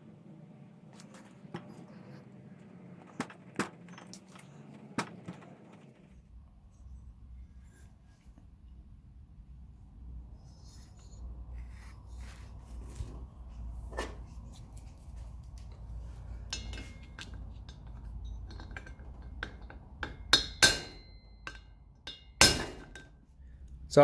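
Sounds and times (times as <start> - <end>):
metal tools clinking on workbench: 15.4 - 23.2
loud ringing metallic knocks: 16.3 - 23.2.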